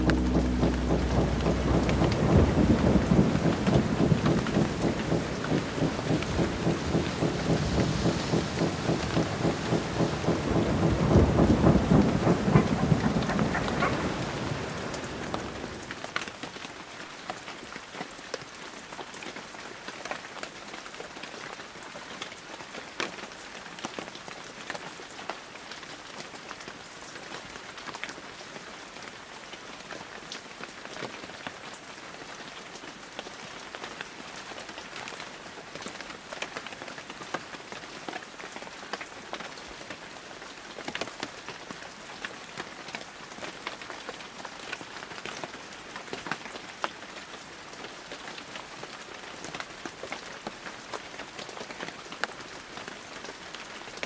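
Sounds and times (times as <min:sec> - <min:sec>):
drops ticking: 0:00.0 - 0:15.9
rain on a hard surface: 0:00.0 - 0:54.0.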